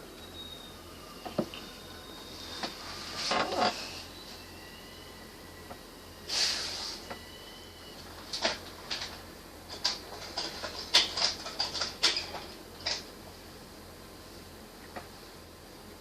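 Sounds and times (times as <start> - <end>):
hissing burst: 6.2 - 7.1.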